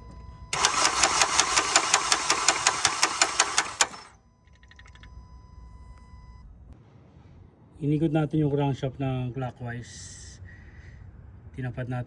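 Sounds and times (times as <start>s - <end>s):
starter cranking engine with clatter: 0.6s - 4.1s.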